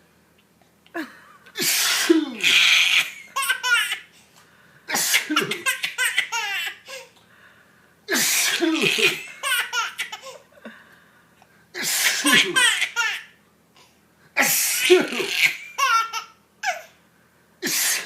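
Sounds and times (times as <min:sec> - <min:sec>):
man sneezing: 0:01.6 - 0:03.1, 0:04.9 - 0:05.6, 0:08.1 - 0:09.3, 0:11.8 - 0:12.7, 0:14.4 - 0:15.6, 0:17.6 - 0:18.0
baby belly laughing: 0:02.2 - 0:04.1, 0:08.6 - 0:10.4, 0:12.2 - 0:13.3, 0:14.9 - 0:16.8.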